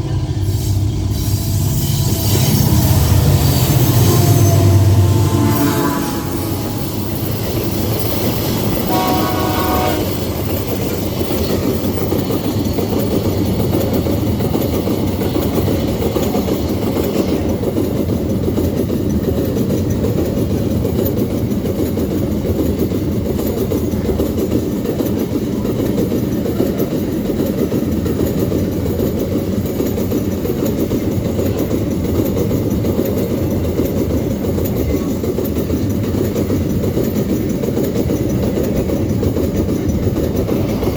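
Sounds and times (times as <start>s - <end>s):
locomotive horn blast: 0.0s - 7.2s, 8.8s - 10.3s
train wheels rumbling on rail: 0.0s - 40.9s.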